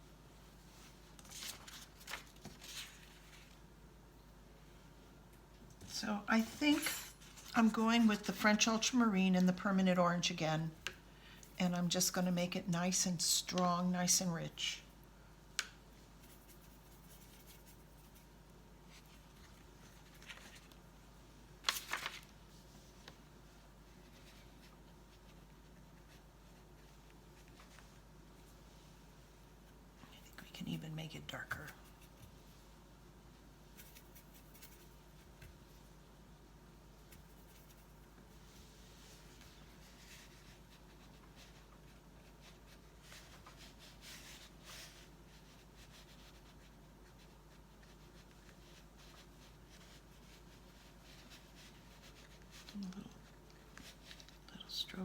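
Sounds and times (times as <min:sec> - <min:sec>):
brush stroking across paper: 0:16.0 - 0:18.3, 0:33.6 - 0:35.4, 0:37.0 - 0:52.7.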